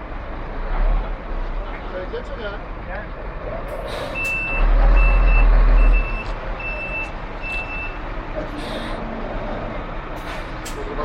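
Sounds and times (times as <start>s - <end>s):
diesel engine running: 0.0s - 11.0s
truck reversing alarm beeping: 4.0s - 9.0s.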